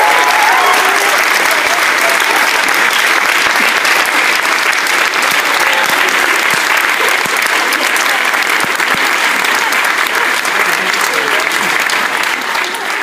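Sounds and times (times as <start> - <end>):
audience applauding: 0.0 - 13.0.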